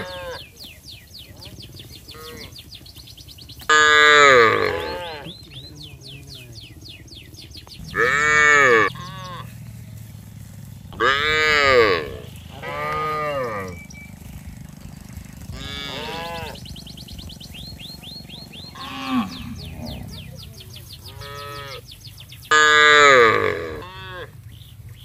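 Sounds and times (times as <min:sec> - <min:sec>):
cattle mooing: 0:00.0 - 0:00.5, 0:02.0 - 0:02.6, 0:03.7 - 0:05.4, 0:07.8 - 0:09.7, 0:10.9 - 0:13.8, 0:15.3 - 0:16.8, 0:17.8 - 0:21.9, 0:22.5 - 0:24.4.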